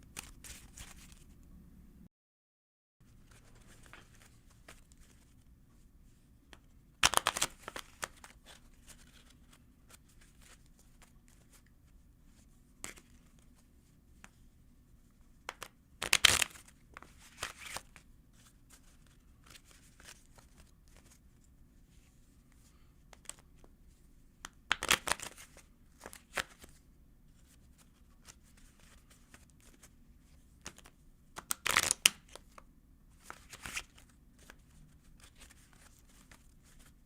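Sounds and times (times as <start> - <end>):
low steady hum: 0.0 - 2.1, 3.0 - 31.5, 32.2 - 37.0
playing cards shuffling: 0.2 - 1.4, 7.0 - 11.6, 15.5 - 21.2, 23.1 - 23.7, 24.7 - 26.8, 27.4 - 30.0, 30.6 - 32.6, 33.2 - 37.0
cards rustling and tapping: 6.5 - 11.7, 15.4 - 21.2, 23.1 - 23.7, 24.4 - 26.8, 30.6 - 32.6, 33.2 - 37.0.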